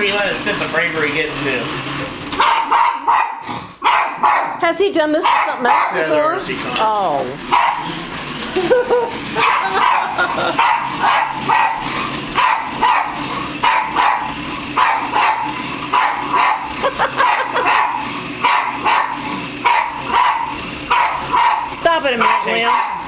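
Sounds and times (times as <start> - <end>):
dog barking: 2.4 - 4.6, 5.2 - 6.1, 7.5 - 7.9, 9.4 - 23.0.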